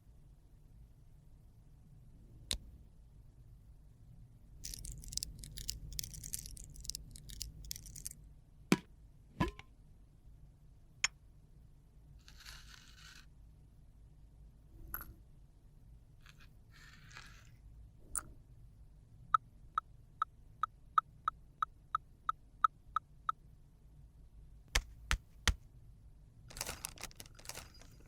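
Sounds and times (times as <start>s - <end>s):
packaging crinkling and scraping: 4.6s - 8.2s, 26.5s - 28.0s.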